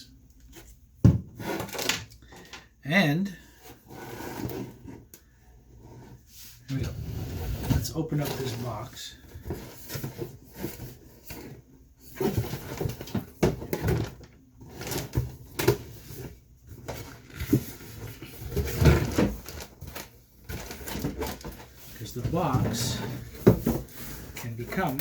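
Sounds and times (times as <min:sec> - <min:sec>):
cardboard knocks and thumps: 0:01.0 - 0:01.4, 0:22.2 - 0:24.0
cardboard box scraping and rustling: 0:05.8 - 0:25.0.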